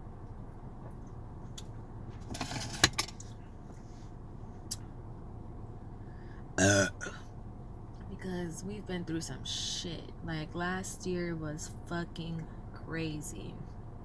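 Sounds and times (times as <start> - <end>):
low-pitched burp: 6.6 - 7.2.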